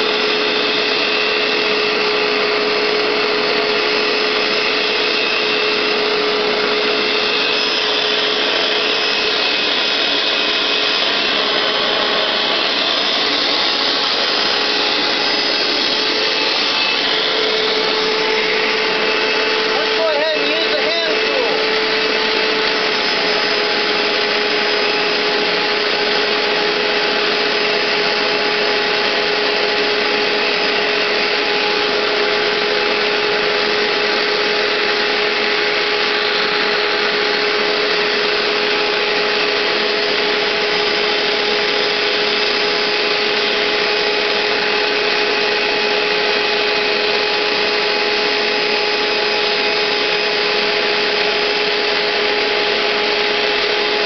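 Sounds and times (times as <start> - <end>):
carpet cleaner motor running: 0.0 - 54.0.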